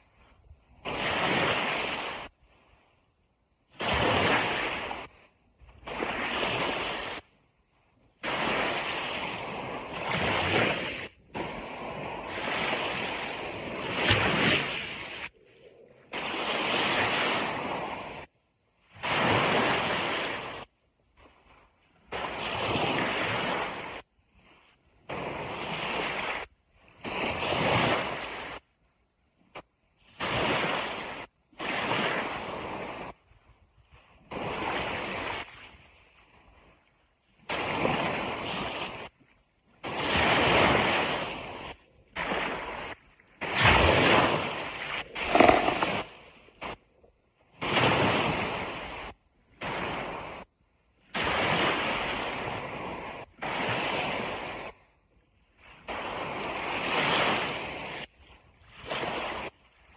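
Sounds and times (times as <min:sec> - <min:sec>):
ocean surf washing onto beach: 0:39.8 - 0:46.0.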